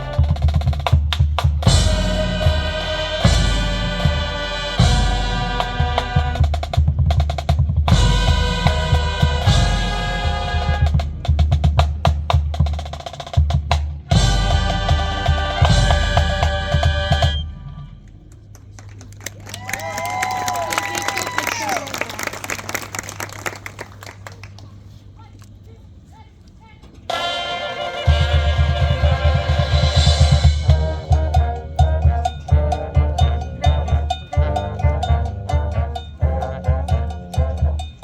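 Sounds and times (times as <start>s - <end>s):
snare and bass drums: 0.0s - 18.7s, 27.1s - 38.0s
marching band brass chords: 0.0s - 25.2s, 27.1s - 38.0s.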